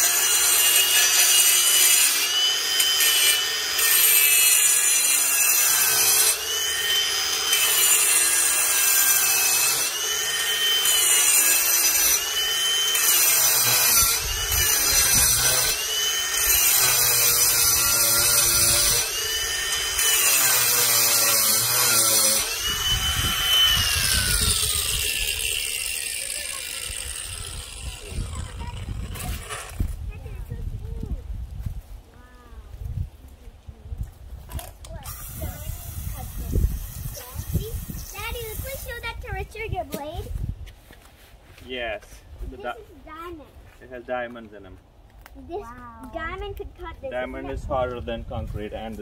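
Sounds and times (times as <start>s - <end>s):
angle grinder motor whine: 0.0s - 29.9s
grinding wheel scraping concrete: 0.0s - 30.4s.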